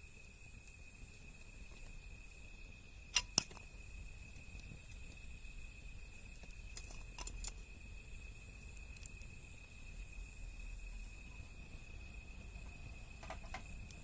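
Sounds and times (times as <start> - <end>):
insects trilling: 0.0 - 14.0
wood fire crackling: 0.0 - 14.0
sharp fire pops: 3.0 - 3.8.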